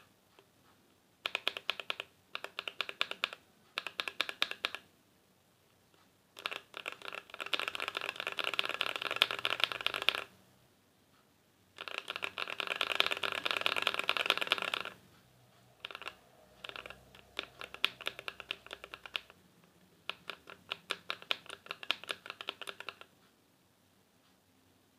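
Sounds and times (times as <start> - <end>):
typing on mechanical keyboard: 1.2 - 4.9, 6.4 - 10.4, 11.8 - 15.0, 15.8 - 19.4, 20.0 - 23.1.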